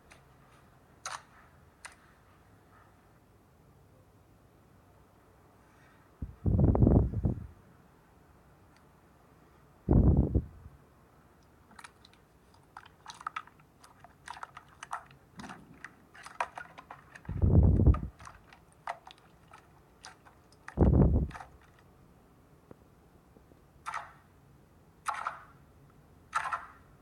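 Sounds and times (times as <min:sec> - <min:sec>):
heavy low thuds: 0:06.2 - 0:07.5, 0:09.9 - 0:10.7, 0:17.3 - 0:18.1, 0:20.8 - 0:21.3.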